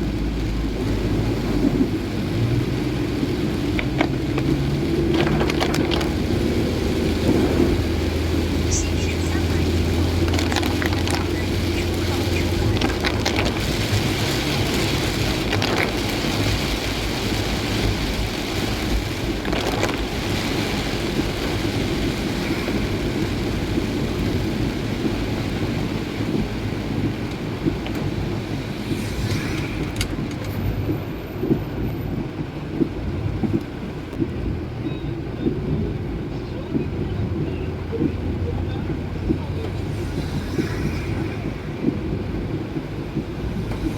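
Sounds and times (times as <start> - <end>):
heavy rain on a vehicle: 0.0 - 43.9
road and engine noise: 0.0 - 43.9.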